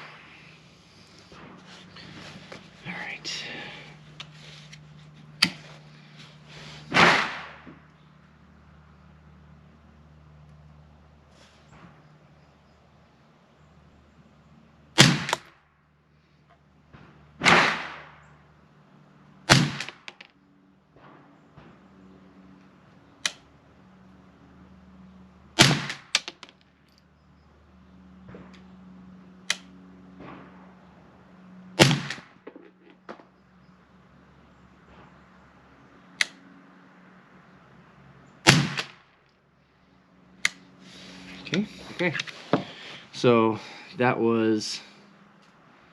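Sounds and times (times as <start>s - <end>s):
rifle shots: 6.9s - 7.7s, 15.0s - 15.5s, 17.4s - 18.2s, 19.5s - 20.1s, 25.6s - 26.3s, 31.8s - 32.4s, 38.4s - 39.0s
faint sharp cracks: 6.9s - 8.0s, 25.6s - 27.1s, 38.5s - 39.4s.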